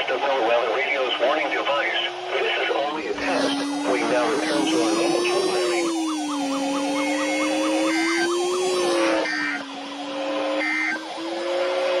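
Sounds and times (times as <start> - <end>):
harsh digital screeches: 3.1 - 9.6
siren-like tone rising and falling: 3.1 - 12.0.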